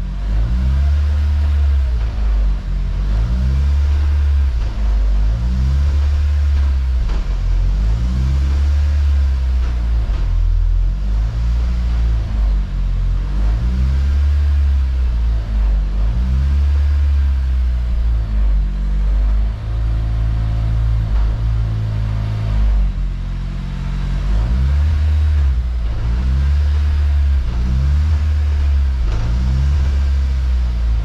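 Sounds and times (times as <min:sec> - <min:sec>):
car engine revving and shifting gears: 0:00.0 - 0:31.0.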